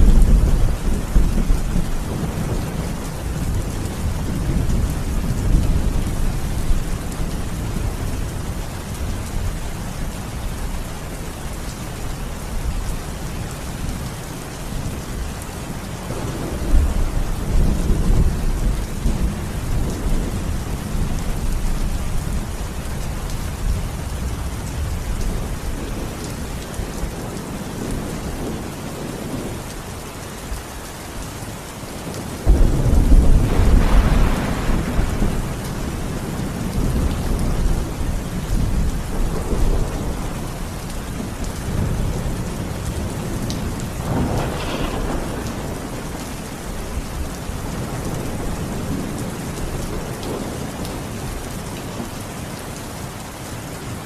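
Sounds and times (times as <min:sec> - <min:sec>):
low rolling thunder: 0:00.0 - 0:11.7, 0:12.6 - 0:30.0, 0:32.0 - 0:51.4
steady rain falling: 0:00.0 - 0:54.0
loud thunder clap: 0:32.4 - 0:36.0, 0:43.8 - 0:46.4.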